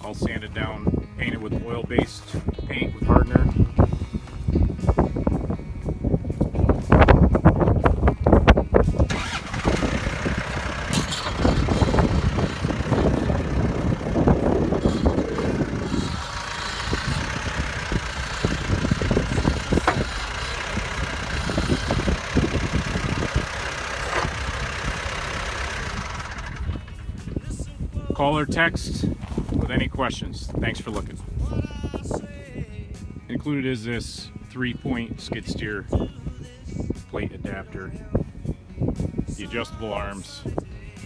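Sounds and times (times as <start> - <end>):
engine running: 3.4 - 31.2.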